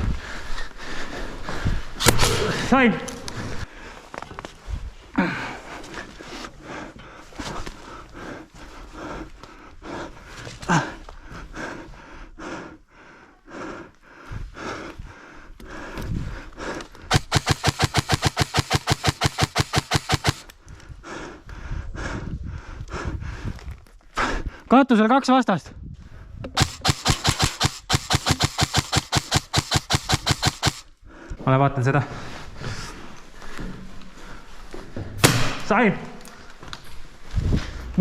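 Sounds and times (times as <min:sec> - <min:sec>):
airsoft rifle firing: 0:17.1 - 0:20.5, 0:26.6 - 0:30.9.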